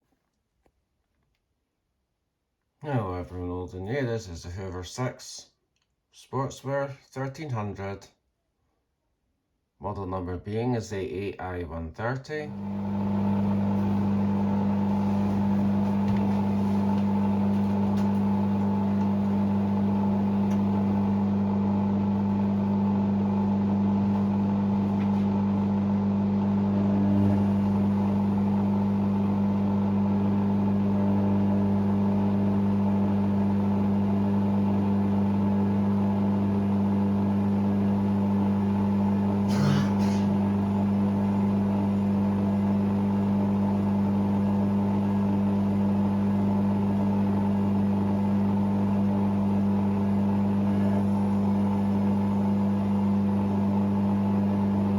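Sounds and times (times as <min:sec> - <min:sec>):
washing machine spinning: 0:12.5 - 0:54.9.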